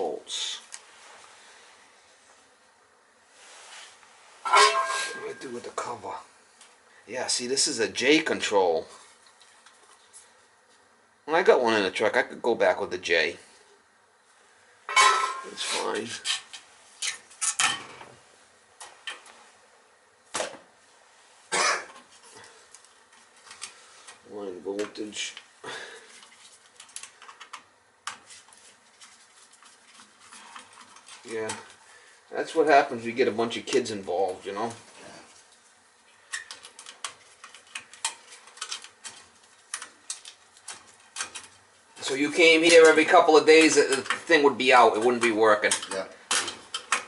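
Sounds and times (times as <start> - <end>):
person coughing: 21.5 - 22.0.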